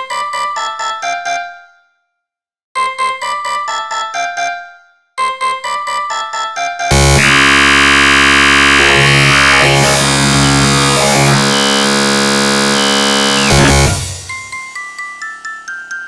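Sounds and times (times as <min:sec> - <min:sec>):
synthesizer ringtone music: 0:06.9 - 0:14.6.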